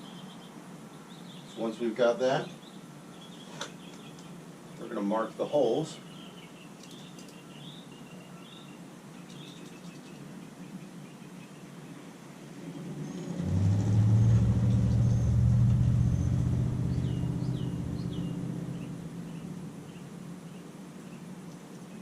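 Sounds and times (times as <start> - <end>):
bird chirps: 0.0 - 1.6, 2.4 - 4.9, 5.9 - 12.1, 12.7 - 22.0
vehicle engine passing by: 12.5 - 20.1.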